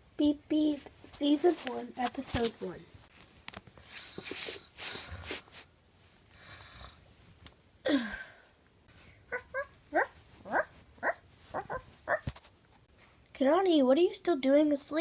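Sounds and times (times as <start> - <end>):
dog whining and yipping: 9.3 - 12.3.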